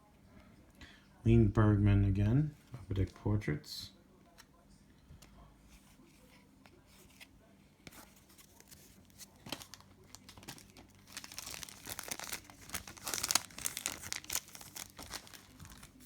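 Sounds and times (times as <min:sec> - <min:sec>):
foil wrapper crinkling and tearing: 0:08.5 - 0:16.0.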